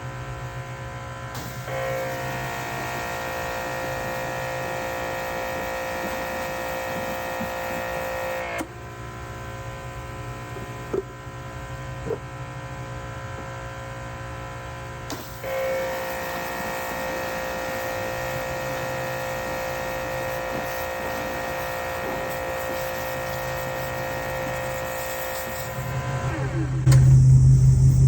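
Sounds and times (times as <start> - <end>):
electric motor humming: 1.7 - 8.7, 15.4 - 28.0.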